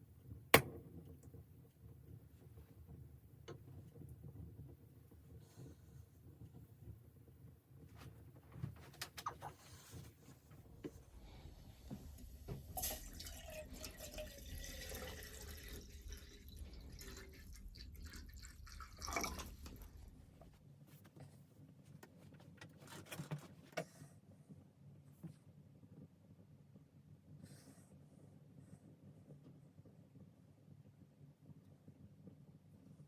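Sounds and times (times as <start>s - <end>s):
liquid pouring into container: 11.2s - 20.4s.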